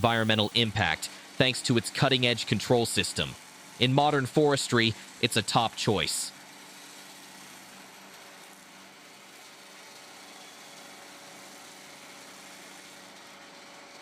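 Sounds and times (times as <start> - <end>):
harvester engine running: 0.0 - 0.6.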